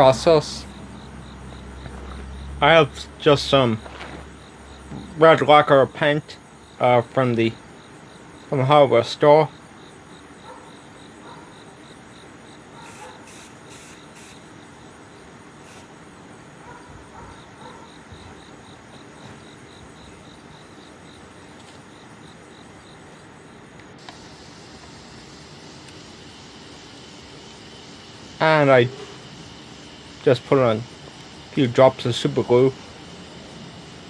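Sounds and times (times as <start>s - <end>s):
faint steady chirping: 0.0s - 34.0s
spray paint can hissing: 12.8s - 14.4s, 15.6s - 15.9s.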